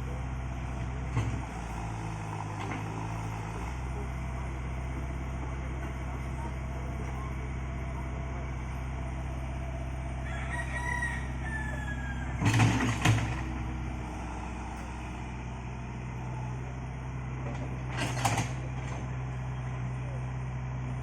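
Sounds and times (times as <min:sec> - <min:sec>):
engine idling: 0:00.0 - 0:21.0
rooster crowing: 0:10.2 - 0:12.8.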